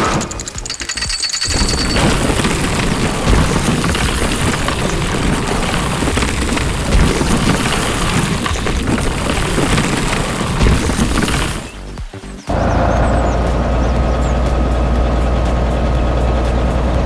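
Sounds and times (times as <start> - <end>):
rock and earth rumbling and crashing: 0.0 - 12.2.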